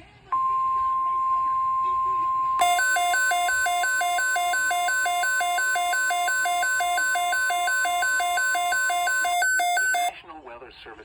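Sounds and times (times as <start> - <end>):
alternating low and high beeps: 0.4 - 10.1
steady alert tone: 0.9 - 10.1.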